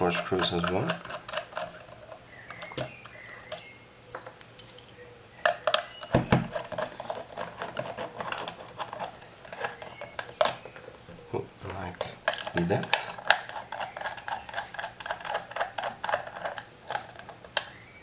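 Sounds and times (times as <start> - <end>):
louder knocks: 6.2 - 6.6.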